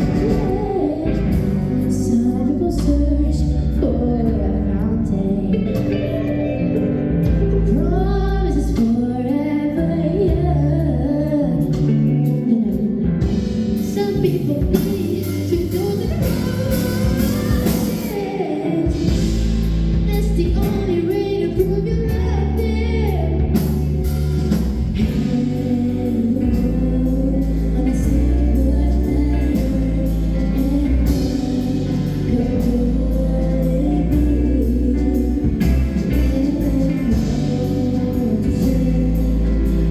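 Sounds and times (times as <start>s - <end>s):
band playing: 0.0s - 4.8s, 5.5s - 8.0s, 13.1s - 39.9s
singing voices: 0.0s - 6.5s, 7.4s - 39.9s
bass notes: 0.0s - 39.9s
guitar: 0.0s - 39.9s.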